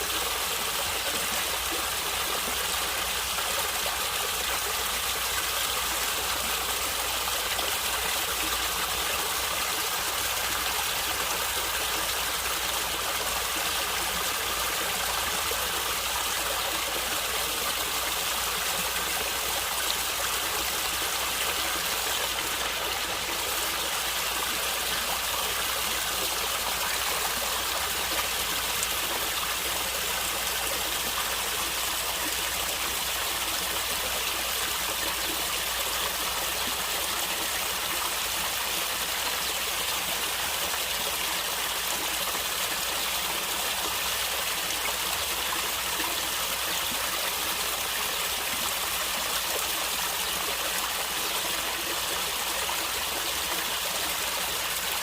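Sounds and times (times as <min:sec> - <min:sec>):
stream water gurgling: 0:00.0 - 0:55.0.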